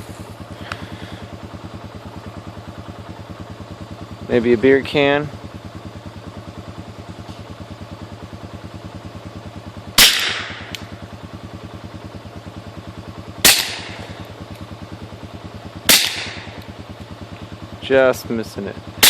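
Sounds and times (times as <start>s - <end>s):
atv engine idling: 0.0s - 19.0s
suppressed pistol shots: 10.0s - 10.9s, 13.4s - 14.0s, 15.9s - 16.5s.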